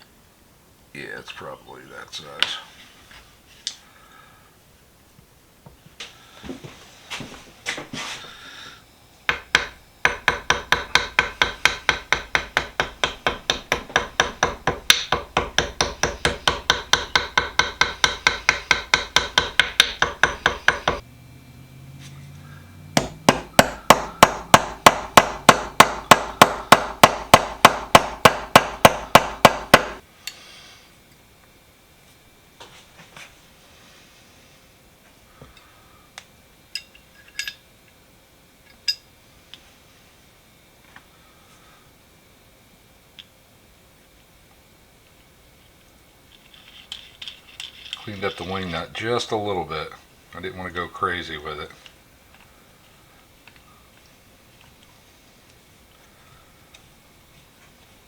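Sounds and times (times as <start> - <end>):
small hammer tapping on metal: 9.3 - 21.0, 23.0 - 30.0.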